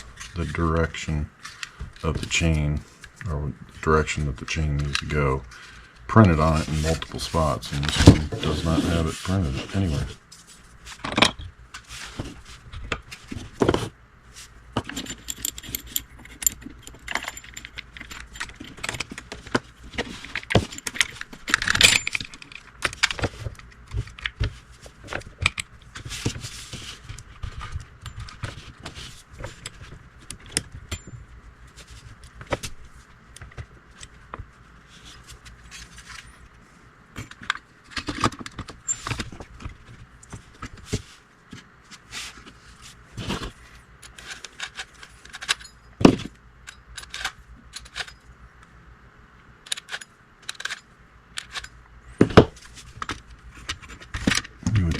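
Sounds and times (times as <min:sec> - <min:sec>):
saw chain clinking and rattling: 0:14.8 - 0:18.8.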